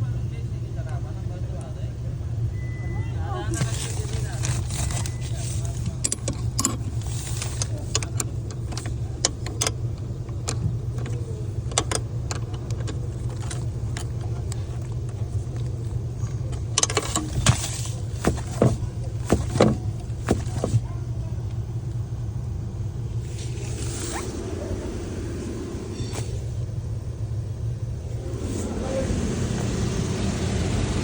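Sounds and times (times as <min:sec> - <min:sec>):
car engine idling: 0:00.0 - 0:31.0
metallic clicks and knocks: 0:04.4 - 0:20.8.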